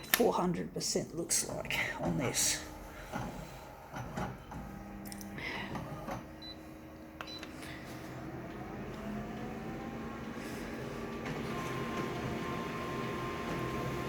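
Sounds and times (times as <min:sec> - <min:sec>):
photocopier motor whine: 0:02.1 - 0:14.0.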